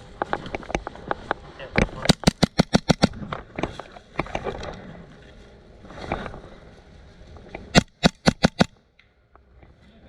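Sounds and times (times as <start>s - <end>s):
airsoft gun shots: 2.0s - 3.2s, 7.7s - 8.8s.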